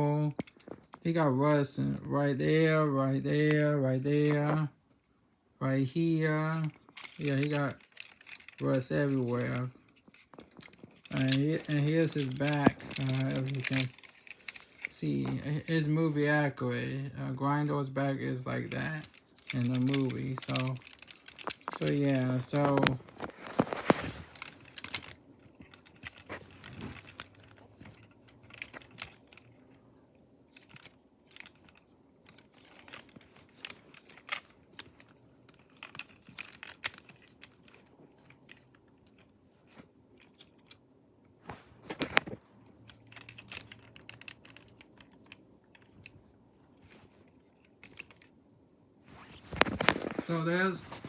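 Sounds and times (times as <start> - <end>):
plastic toy clicks and rustles: 0.3 - 1.0, 6.3 - 15.9, 17.5 - 40.9, 41.8 - 48.4.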